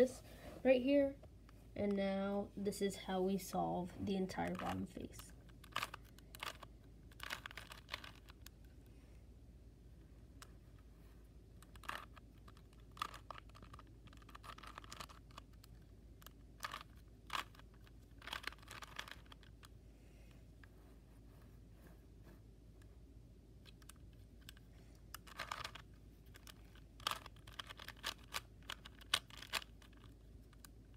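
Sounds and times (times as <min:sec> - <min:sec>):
plastic puzzle cube clicking: 0:04.5 - 0:08.9, 0:11.6 - 0:19.8, 0:23.6 - 0:30.9.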